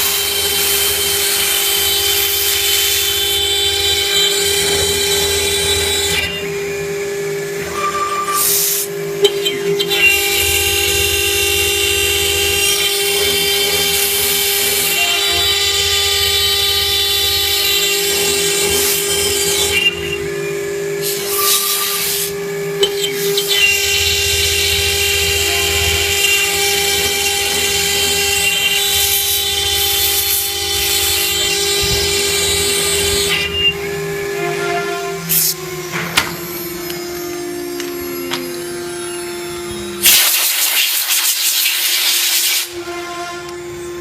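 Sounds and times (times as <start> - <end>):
router spindle whining: 0.0 - 40.1
harsh cutting hiss: 40.0 - 42.8.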